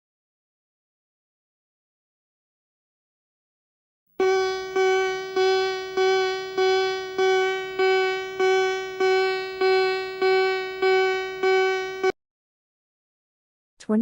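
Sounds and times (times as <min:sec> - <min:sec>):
repeated electronic keyboard note: 0:04.2 - 0:12.2.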